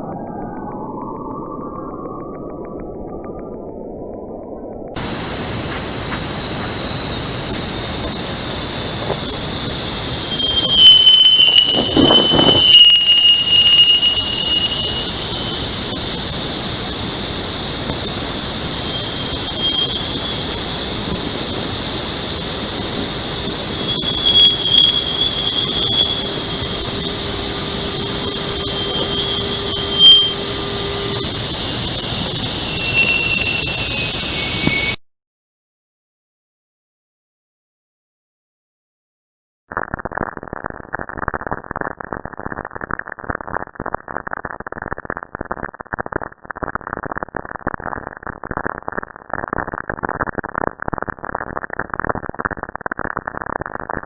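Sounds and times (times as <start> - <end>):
static hiss: 5.0 - 35.0
high sliding whistling tones: 6.4 - 35.0.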